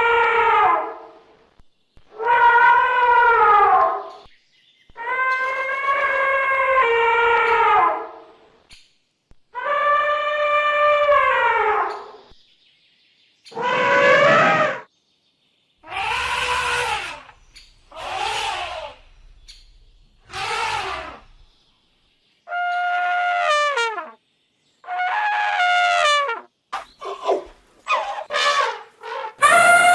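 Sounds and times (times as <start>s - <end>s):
elephant trumpeting: 13.5s - 14.9s, 15.8s - 19.3s, 20.2s - 21.4s, 27.0s - 29.9s.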